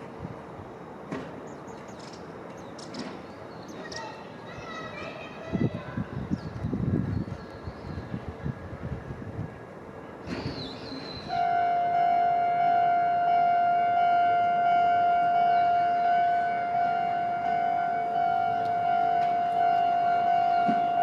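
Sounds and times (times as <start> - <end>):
faint street noise: 0.0 - 21.0
level crossing warning alarm: 11.3 - 21.0.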